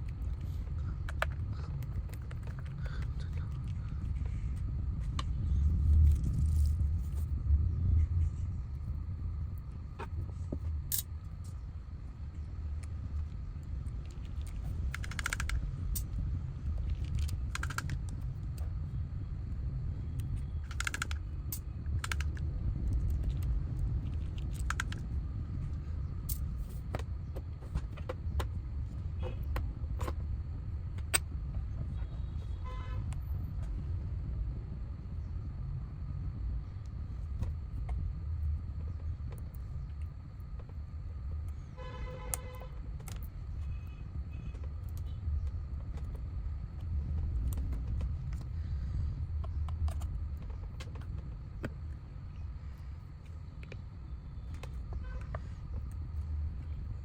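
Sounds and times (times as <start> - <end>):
steady low rumble: 0.0 - 57.0
tools and parts clicking and tapping: 1.0 - 4.0, 10.0 - 11.2, 13.9 - 16.2, 16.8 - 18.7, 20.2 - 25.1, 42.3 - 43.3, 49.4 - 51.8.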